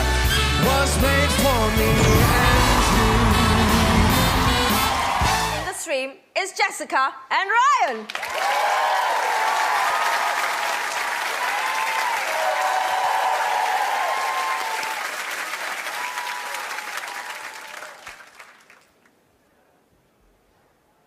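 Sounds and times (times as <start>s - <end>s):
audience applauding and cheering: 1.7s - 5.7s, 8.1s - 19.0s.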